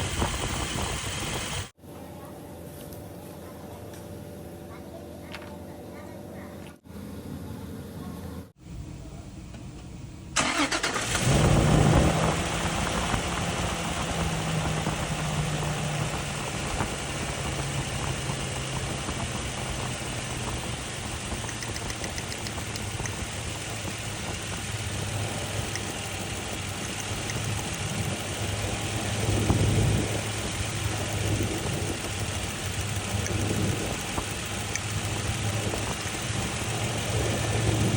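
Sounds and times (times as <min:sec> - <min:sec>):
engine starting and idling: 0:10.4 - 0:15.0.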